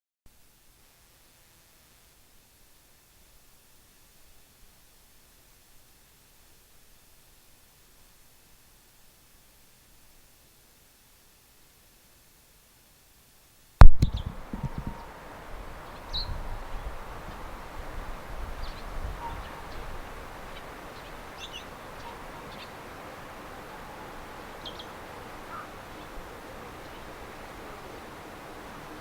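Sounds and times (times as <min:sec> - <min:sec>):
steady outdoor hiss: 0:00.3 - 0:29.0
faint high bird chirps: 0:13.8 - 0:29.0.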